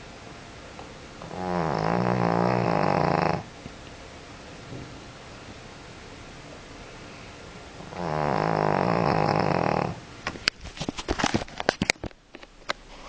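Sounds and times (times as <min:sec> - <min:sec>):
dog snoring: 0:01.2 - 0:03.5, 0:07.8 - 0:10.0.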